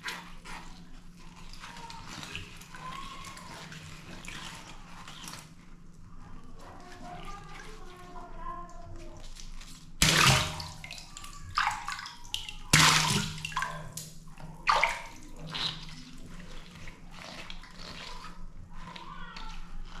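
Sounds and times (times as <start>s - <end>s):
water balloons bursting: 10.0s - 16.1s.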